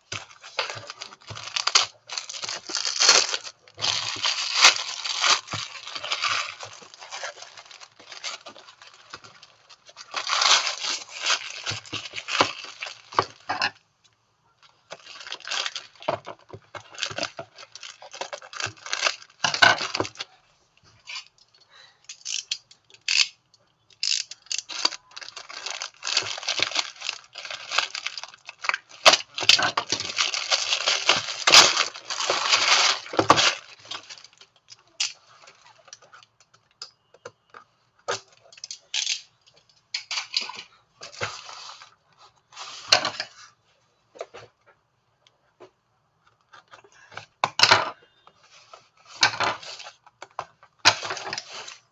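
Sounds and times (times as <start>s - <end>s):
packaging rustling and tearing: 0.0s - 13.5s, 14.9s - 20.3s, 24.0s - 36.1s, 50.8s - 51.9s
plastic parts clattering: 0.0s - 13.8s, 14.9s - 20.3s, 22.0s - 37.3s, 38.0s - 41.3s, 49.1s - 51.9s.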